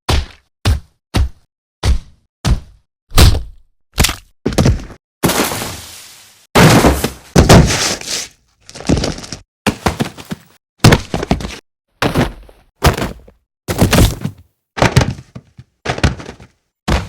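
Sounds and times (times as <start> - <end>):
punch and kick impacts: 0.1 - 5.5, 6.6 - 8.0, 9.7 - 15.3, 15.9 - 17.0.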